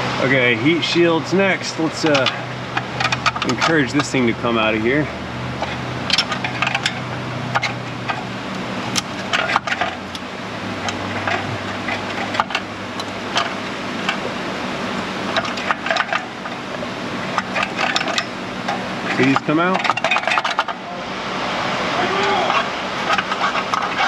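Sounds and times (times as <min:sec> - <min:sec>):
steady low hum: 0:00.0 - 0:24.0
metal heat shield rattling and scraping: 0:00.3 - 0:20.8, 0:22.0 - 0:24.0
sharp clicks and knocks: 0:01.9 - 0:04.4, 0:05.6 - 0:14.4, 0:15.2 - 0:20.8, 0:22.5 - 0:24.0.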